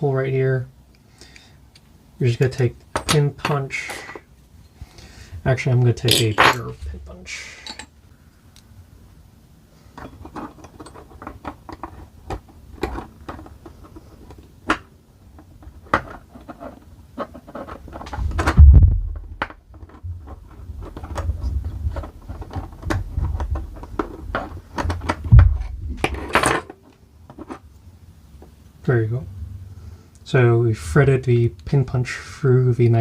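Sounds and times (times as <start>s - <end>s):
dull thumps handling parts: 5.7s - 8.0s, 9.9s - 27.7s.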